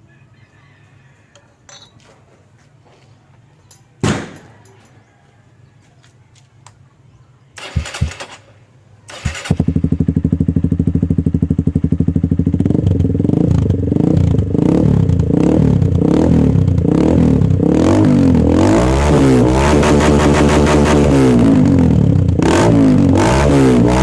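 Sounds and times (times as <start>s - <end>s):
motorcycle engine idling and revving: 7.6s - 24.0s.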